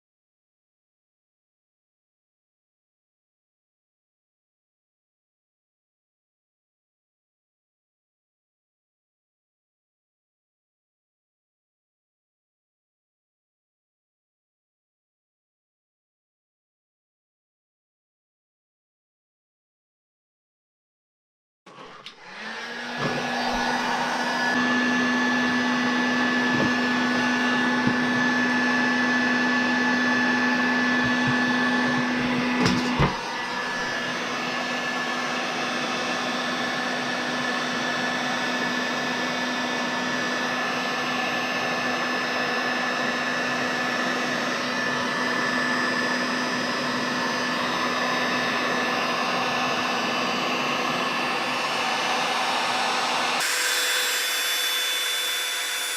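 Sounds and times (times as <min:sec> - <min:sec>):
heat gun blowing air: 0:21.7 - 0:55.9.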